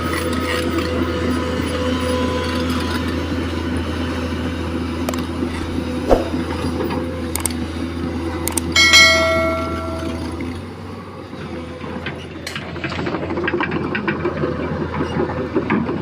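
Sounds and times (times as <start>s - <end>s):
ringing metallic clang: 8.8s - 10.6s.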